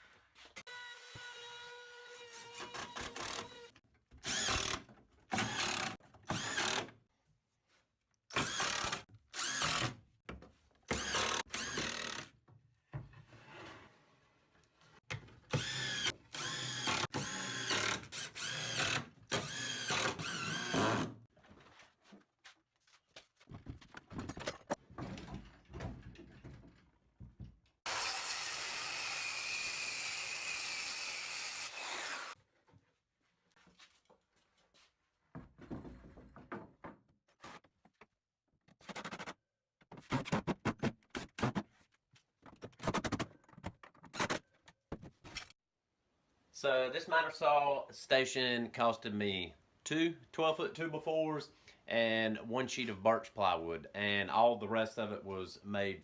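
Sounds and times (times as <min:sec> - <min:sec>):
power drill whirring: 0:02.4 - 0:06.8, 0:08.3 - 0:09.9, 0:10.9 - 0:12.2, 0:15.5 - 0:21.1, 0:27.9 - 0:32.4.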